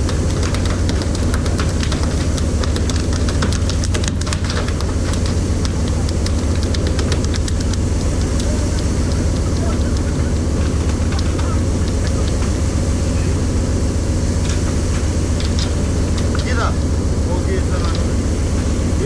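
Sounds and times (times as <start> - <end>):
sharp clicks and knocks: 0.0 - 12.8, 14.4 - 16.8
boat engine droning: 0.0 - 19.0.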